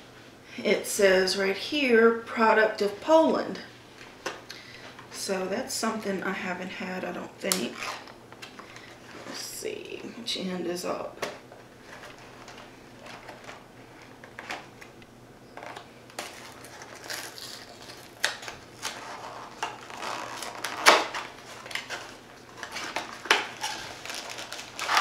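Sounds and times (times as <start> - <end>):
crinkling cardboard and wrapper: 11.2 - 15.0, 15.6 - 25.0
cardboard box being opened: 18.8 - 25.0.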